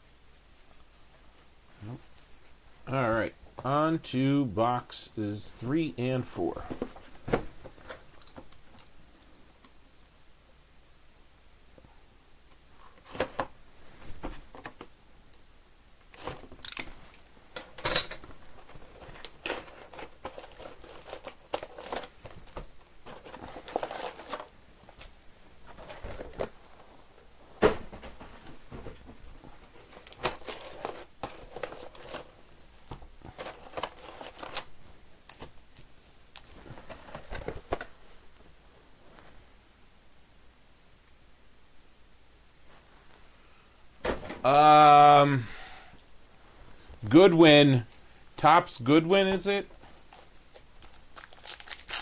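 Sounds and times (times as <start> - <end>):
packaging crinkling: 18.8 - 24.5, 49.8 - 52.0
plastic wrap tearing: 50.2 - 52.0.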